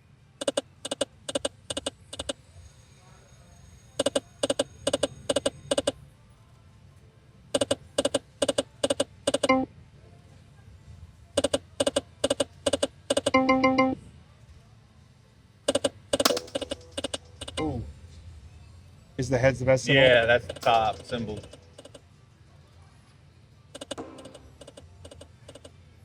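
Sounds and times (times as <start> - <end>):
slot machine chimes: 13.3 - 14.0, 16.3 - 17.4.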